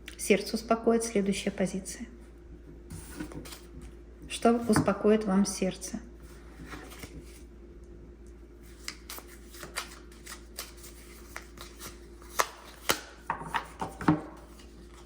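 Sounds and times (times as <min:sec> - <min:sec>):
cards being handled: 0:06.6 - 0:07.4, 0:08.7 - 0:15.0.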